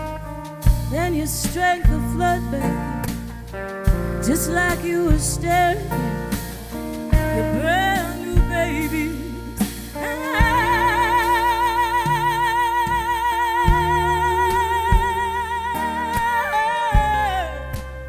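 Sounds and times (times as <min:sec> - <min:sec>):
bass notes: 0:00.0 - 0:18.0
drum hits: 0:05.0 - 0:09.0, 0:09.6 - 0:17.9
held note with vibrato: 0:10.0 - 0:18.0.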